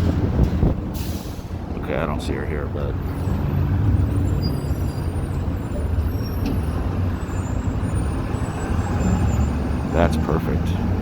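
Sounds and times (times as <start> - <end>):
heavy vehicle engine rumbling: 0.0 - 11.0.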